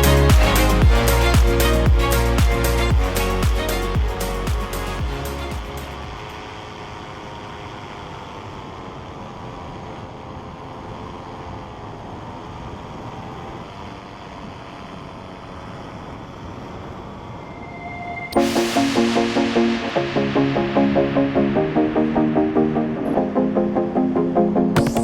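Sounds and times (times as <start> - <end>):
paramotor engine droning: 0.0 - 18.4
wind rushing hiss: 17.6 - 22.9.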